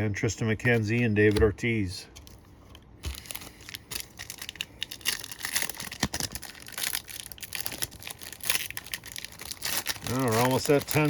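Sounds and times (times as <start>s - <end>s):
wrapper crinkling and tearing: 3.0s - 11.0s.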